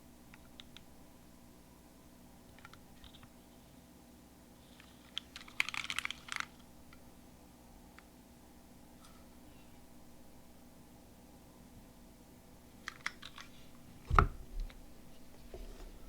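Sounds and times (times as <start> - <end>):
mechanical keyboard keystrokes: 5.1 - 6.5.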